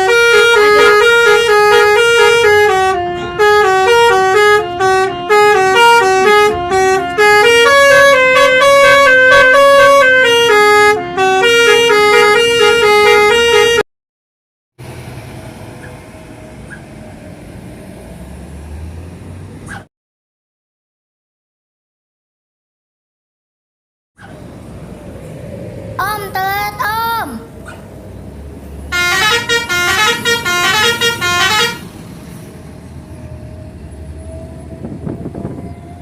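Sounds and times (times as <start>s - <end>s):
bus horn playing melody: 0.0s - 13.8s, 28.9s - 32.0s.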